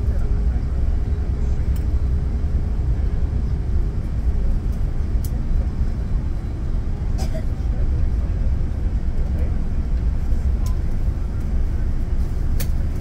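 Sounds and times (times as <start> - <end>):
aircraft cabin rumble: 0.0 - 13.0.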